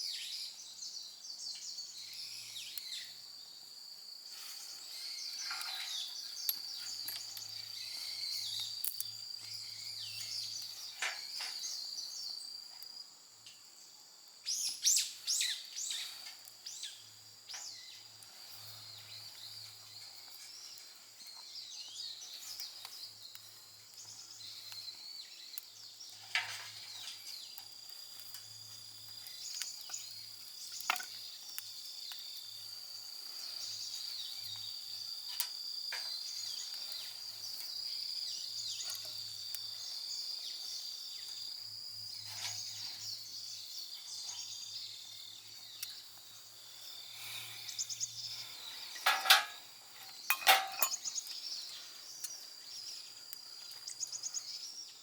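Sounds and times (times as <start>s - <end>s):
high-pitched insect trill: 0.0s - 55.0s
campfire crackles: 2.0s - 44.3s, 44.9s - 54.6s
bird chirps: 14.4s - 27.6s, 50.0s - 55.0s.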